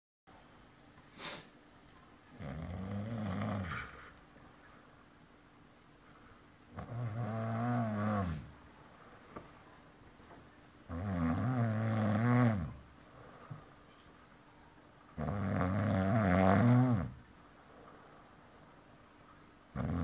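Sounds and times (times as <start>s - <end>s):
person snoring loudly: 2.4s - 4.0s, 6.8s - 8.5s, 10.9s - 12.8s, 15.2s - 17.2s, 19.8s - 20.0s.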